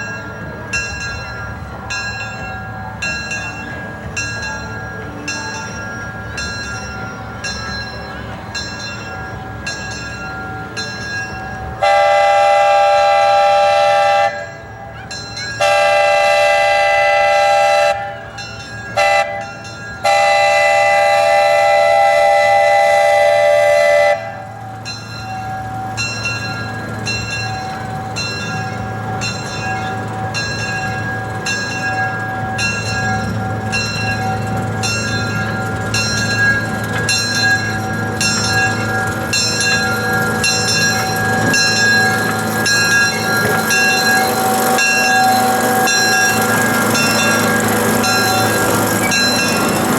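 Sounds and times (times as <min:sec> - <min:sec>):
train running with steady beat: 0:00.0 - 0:49.9
train chime whistle blasts: 0:11.8 - 0:24.6.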